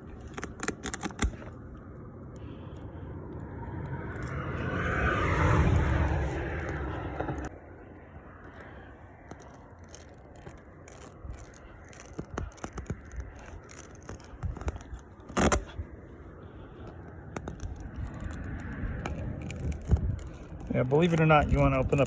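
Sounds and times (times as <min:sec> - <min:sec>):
metal tools scraping on tire: 0:08.5 - 0:15.8, 0:16.8 - 0:22.0.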